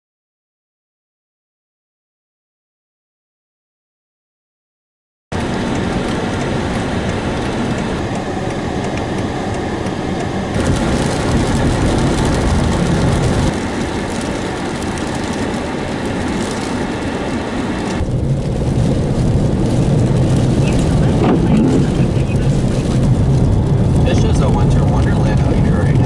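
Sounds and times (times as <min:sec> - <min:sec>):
car driving on snowy road: 0:05.3 - 0:26.0.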